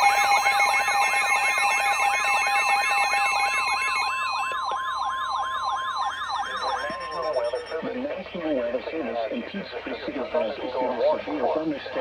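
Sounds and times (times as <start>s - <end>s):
fast warbling siren-like sweep: 0.0s - 7.9s
steady alert tone: 0.0s - 7.9s.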